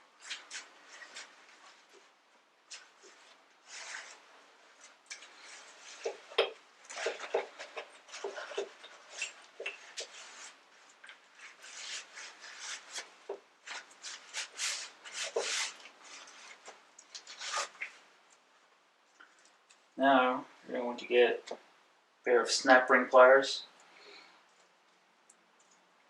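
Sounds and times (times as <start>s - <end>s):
rubbing and scraping strokes: 0.1s - 18.1s.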